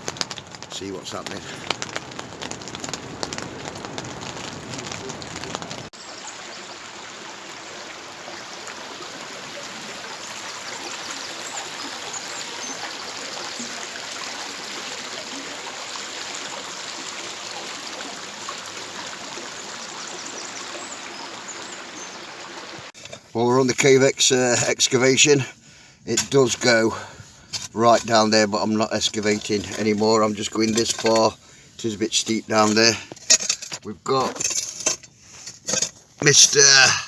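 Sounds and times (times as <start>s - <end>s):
campfire crackling: 0.0s - 7.9s
running water rushing: 0.0s - 25.4s, 36.2s - 37.0s.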